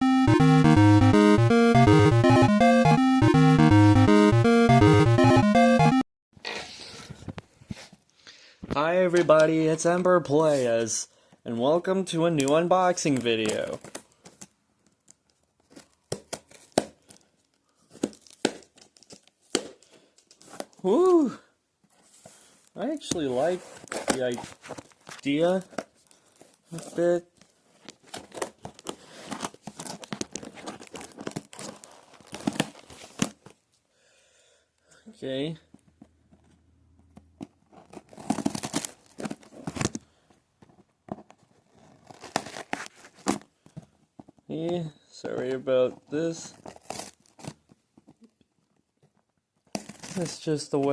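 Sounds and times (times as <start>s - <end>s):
packaging crackling and ripping: 13.1s - 19.5s, 23.8s - 26.8s, 27.4s - 33.5s, 37.7s - 40.0s, 41.7s - 43.4s, 46.5s - 47.7s.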